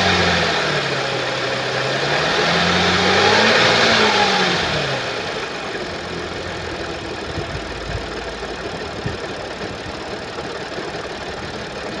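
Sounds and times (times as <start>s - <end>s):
car engine idling with knocking: 0.0s - 12.0s
low thumps: 6.6s - 9.9s.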